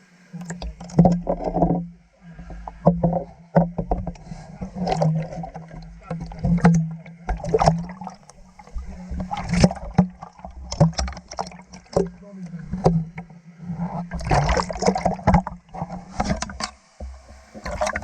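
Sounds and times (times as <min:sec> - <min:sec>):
steady low hum: 0:00.0 - 0:18.0
water splashing: 0:00.0 - 0:18.0.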